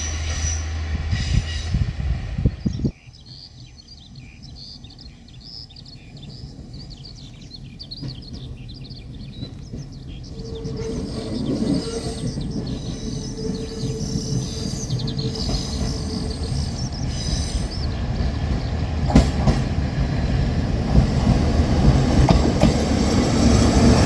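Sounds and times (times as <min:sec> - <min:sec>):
loud low rumble: 0:00.0 - 0:02.9
small birds chirping: 0:02.5 - 0:24.0.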